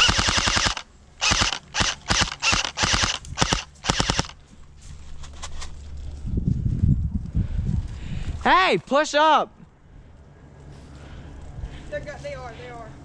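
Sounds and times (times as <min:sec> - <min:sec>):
airsoft guns firing bursts: 0:00.0 - 0:04.4.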